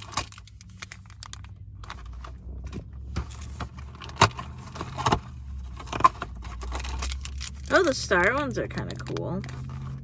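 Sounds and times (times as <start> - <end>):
cardboard packaging crinkling: 0.0 - 2.3, 5.5 - 10.0.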